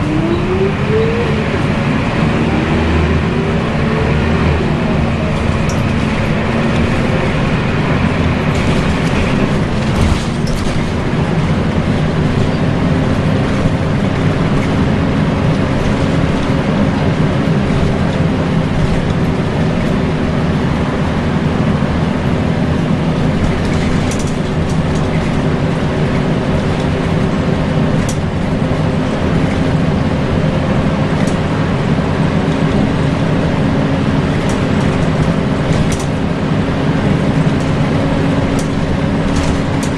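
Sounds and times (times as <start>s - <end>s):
bus engine and fan whine: 0.0s - 39.9s
road and body rumble: 0.0s - 39.9s
knocks and rattles: 8.5s - 11.5s.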